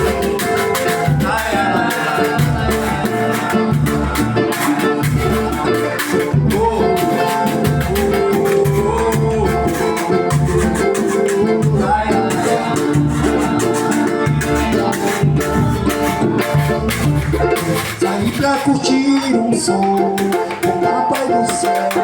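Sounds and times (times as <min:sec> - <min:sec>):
bass: 0:00.0 - 0:18.8
hand percussion: 0:00.0 - 0:22.0
plucked strings: 0:00.0 - 0:22.0.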